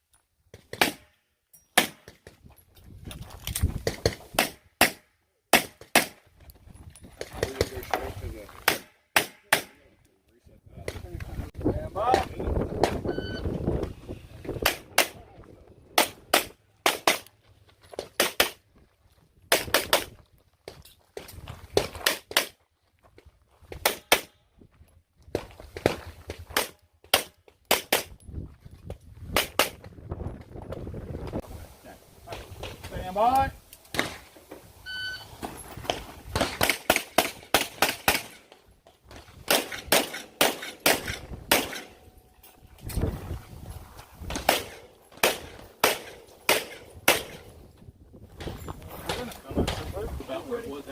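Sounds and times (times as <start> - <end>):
shot timer beep: 13.1 - 13.5
pistol shots with echo: 39.5 - 42.0, 44.4 - 47.5.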